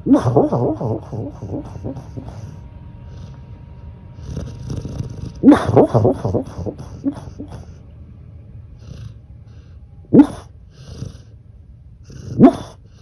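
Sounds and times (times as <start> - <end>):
sharp loud snorts: 0.0 - 3.4, 4.2 - 7.7, 10.1 - 11.3, 12.1 - 13.0
pet snoring: 0.0 - 3.5, 4.1 - 7.8, 8.8 - 11.4, 12.0 - 13.0
quiet breathing: 0.0 - 13.0.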